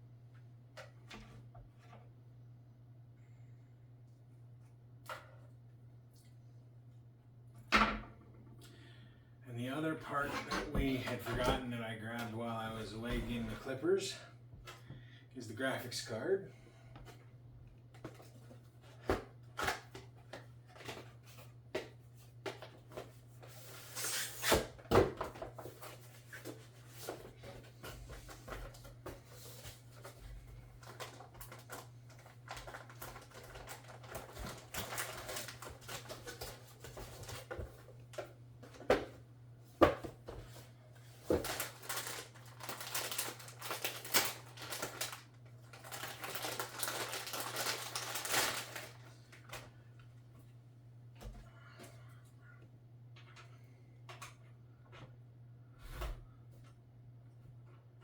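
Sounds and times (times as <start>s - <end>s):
hands handling parts and packaging: 25.2s - 39.2s, 39.8s - 49.6s.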